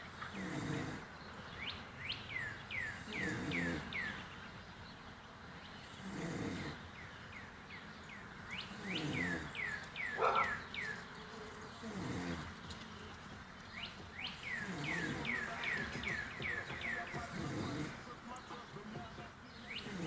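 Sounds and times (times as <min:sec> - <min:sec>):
man snoring: 0:00.4 - 0:01.1, 0:03.0 - 0:03.9, 0:06.0 - 0:06.8, 0:08.8 - 0:09.6, 0:11.7 - 0:12.6, 0:14.6 - 0:16.0, 0:17.1 - 0:18.2.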